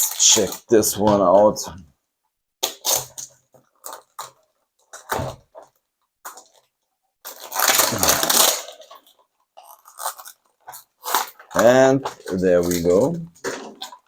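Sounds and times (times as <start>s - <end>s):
packaging crinkling and rustling: 2.6s - 14.0s.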